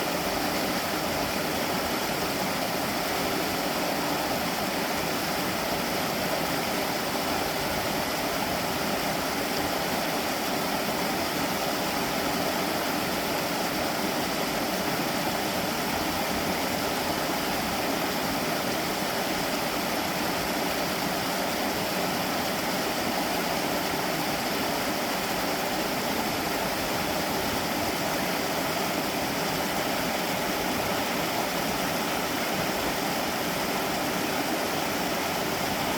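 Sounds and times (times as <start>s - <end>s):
stream water rushing: 0.0s - 35.9s.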